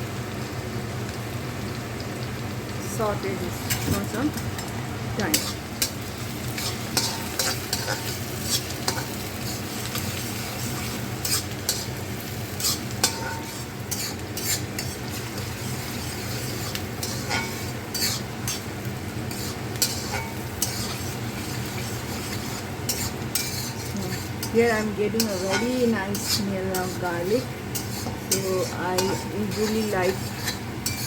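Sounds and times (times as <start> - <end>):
vegetables sizzling in oil: 0.0 - 31.0
utensil clicking against pan: 19.3 - 27.0, 27.7 - 31.0.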